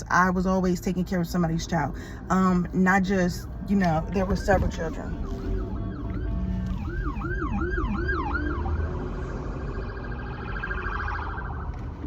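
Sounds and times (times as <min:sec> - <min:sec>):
low rumble: 0:01.0 - 0:12.0
police siren wailing: 0:03.3 - 0:12.0.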